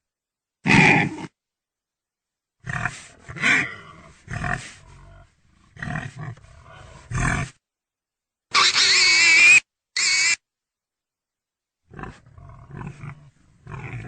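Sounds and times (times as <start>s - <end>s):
pig grunting: 0.6s - 1.3s, 2.6s - 7.6s, 11.9s - 14.0s.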